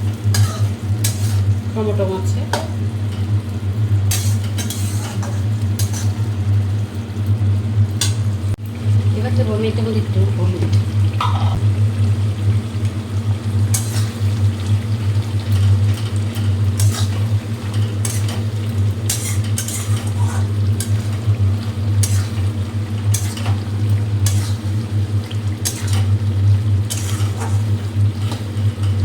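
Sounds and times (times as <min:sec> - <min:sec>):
meat frying in a pan: 0:00.0 - 0:29.0
spatula scraping a pan: 0:00.3 - 0:01.5, 0:04.1 - 0:06.2, 0:13.7 - 0:14.4, 0:16.8 - 0:21.3, 0:22.0 - 0:24.9, 0:25.6 - 0:26.2, 0:26.9 - 0:28.5.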